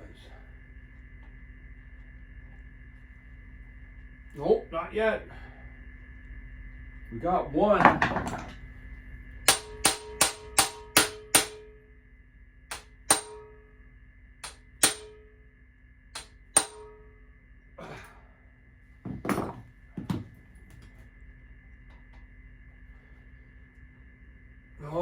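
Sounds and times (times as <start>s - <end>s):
hammer striking metal impact driver: 9.5s - 11.8s, 12.7s - 13.6s, 14.4s - 15.3s, 16.2s - 17.1s.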